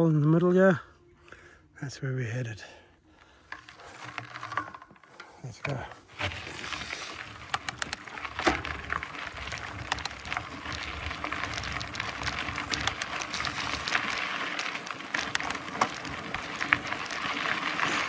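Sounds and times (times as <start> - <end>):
bike clicks and rattles: 3.5 - 18.0
bike tyres rushing: 6.1 - 18.0.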